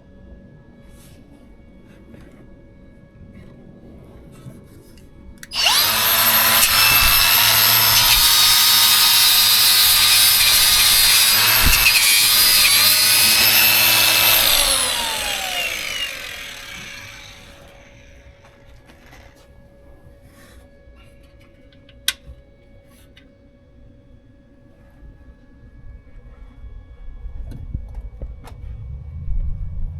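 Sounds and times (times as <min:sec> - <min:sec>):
power tool motor whine: 0:05.4 - 0:18.2.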